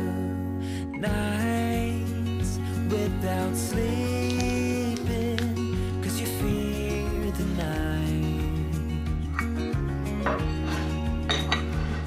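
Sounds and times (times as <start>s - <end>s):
pop song: 0.0s - 12.0s
dishes and cutlery clinking: 10.2s - 12.0s.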